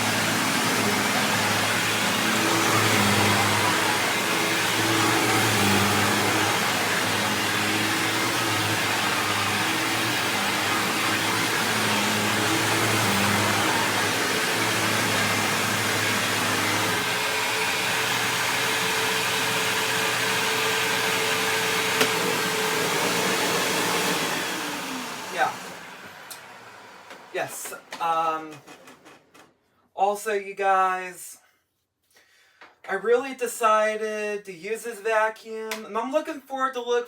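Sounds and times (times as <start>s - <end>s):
vacuum cleaner running: 0.0s - 29.4s.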